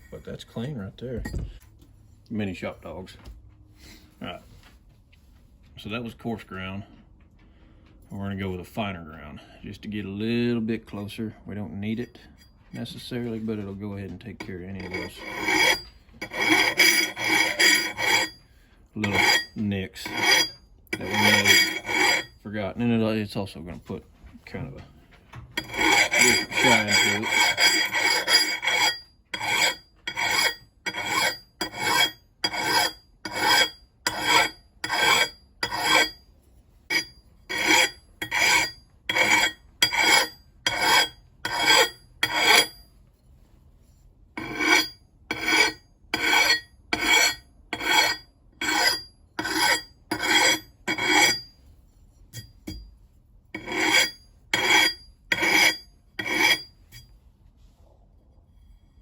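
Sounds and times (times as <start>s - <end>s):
file scraping steel edge: 14.4s - 18.4s, 19.0s - 22.4s, 25.6s - 42.9s, 43.8s - 52.9s, 53.5s - 57.1s.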